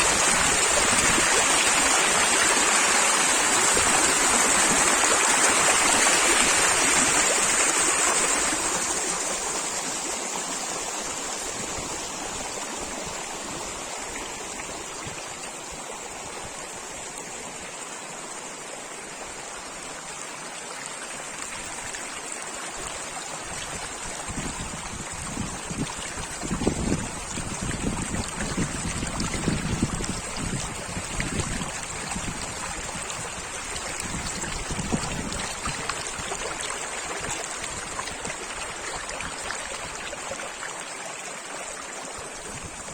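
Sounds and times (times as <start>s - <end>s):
wind gusts on microphone: 0.0s - 9.2s, 23.4s - 40.4s, 42.2s - 42.9s
stream water running: 0.0s - 42.9s.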